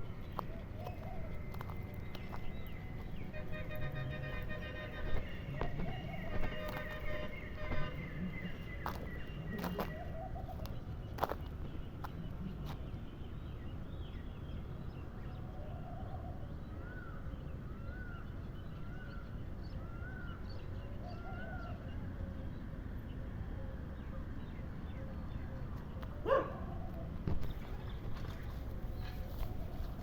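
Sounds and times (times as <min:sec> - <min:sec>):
birds calling: 0:00.0 - 0:13.6.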